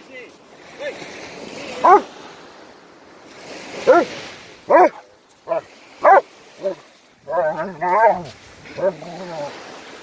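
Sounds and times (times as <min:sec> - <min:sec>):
dog barking: 0:01.8 - 0:02.1, 0:03.8 - 0:09.5.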